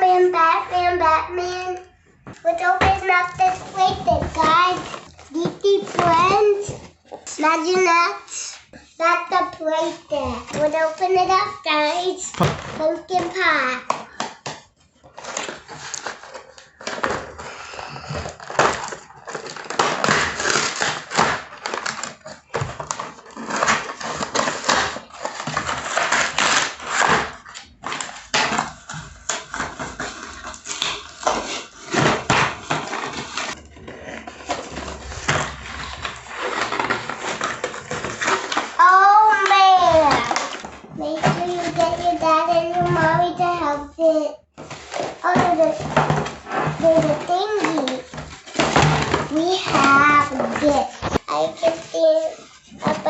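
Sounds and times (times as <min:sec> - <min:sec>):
cardboard and plastic rustling: 0:00.0 - 0:53.0.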